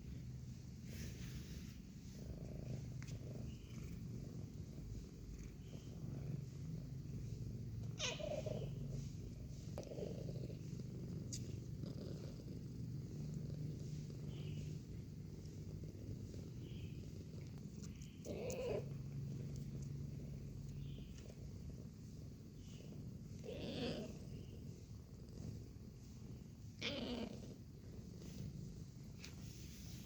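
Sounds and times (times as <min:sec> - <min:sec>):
cat purring: 0:00.0 - 0:30.0.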